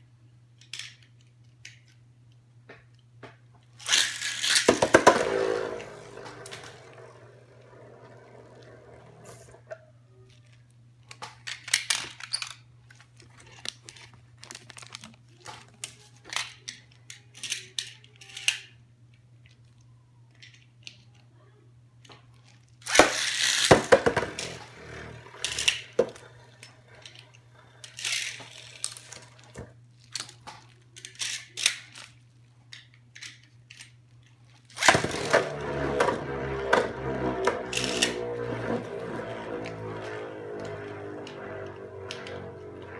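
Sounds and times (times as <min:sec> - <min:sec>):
packaging crinkling and tearing: 0:13.2 - 0:15.9
steady low hum: 0:34.9 - 0:42.9.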